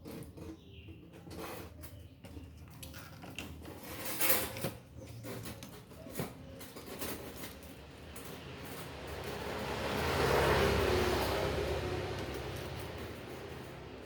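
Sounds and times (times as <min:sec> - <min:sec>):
small parts and tools handled: 0:00.0 - 0:09.6.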